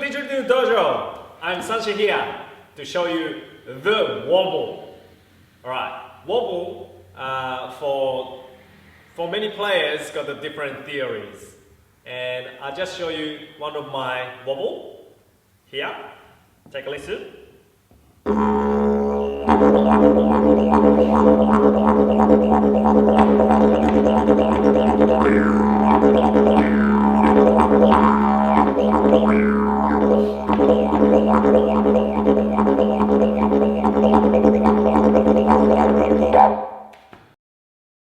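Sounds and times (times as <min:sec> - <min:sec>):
didgeridoo drone: 0:18.3 - 0:36.9.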